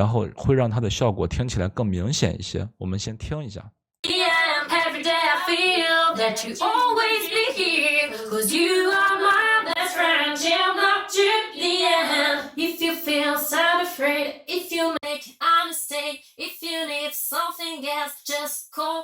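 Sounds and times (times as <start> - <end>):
woman singing unaccompanied: 4.0 - 19.0.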